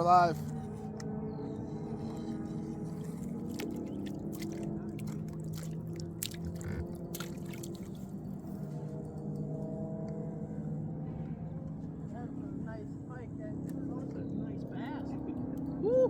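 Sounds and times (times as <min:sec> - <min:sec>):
motor hum: 0:00.0 - 0:16.0
water splashing beside boat: 0:02.8 - 0:08.2.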